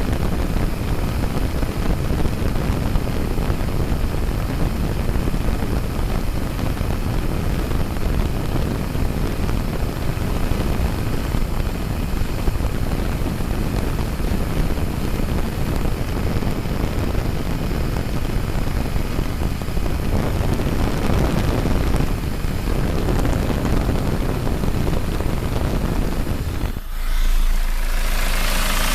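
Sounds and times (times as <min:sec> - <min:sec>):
diesel engine rushing: 0:26.5 - 0:28.9.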